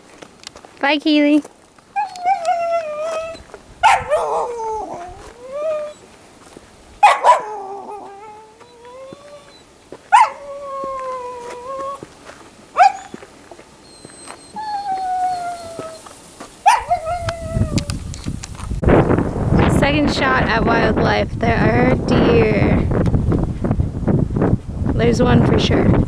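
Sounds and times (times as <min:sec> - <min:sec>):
wind rumbling on microphone: 0:02.0 - 0:06.0, 0:14.5 - 0:26.0
dog howling and whining: 0:02.0 - 0:06.1, 0:07.0 - 0:12.1, 0:12.8 - 0:13.2, 0:13.8 - 0:18.2.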